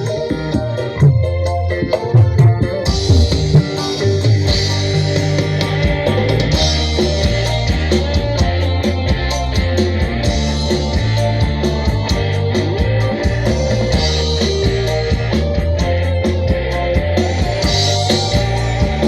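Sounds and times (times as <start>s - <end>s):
band music through pa: 0.0s - 19.0s.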